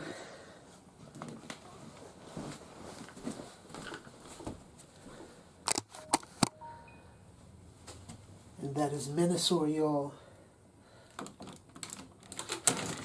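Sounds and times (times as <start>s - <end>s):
sharp clicks: 5.7s - 6.6s
plastic toy rustling: 11.2s - 13.0s.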